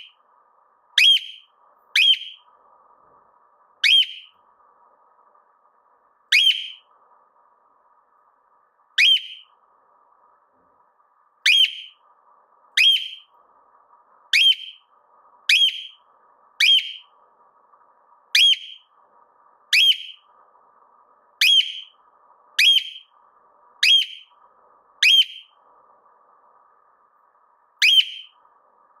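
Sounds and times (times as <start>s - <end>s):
cockatiel whistled call: 1.0s - 2.5s, 3.8s - 4.4s, 6.3s - 6.9s, 9.0s - 9.5s, 11.5s - 12.0s, 12.8s - 13.3s, 14.3s - 14.9s, 15.5s - 16.0s, 16.6s - 17.1s, 18.4s - 18.9s, 19.7s - 20.3s, 21.4s - 22.0s, 22.6s - 23.1s, 23.8s - 24.3s, 25.0s - 25.6s, 27.8s - 28.4s.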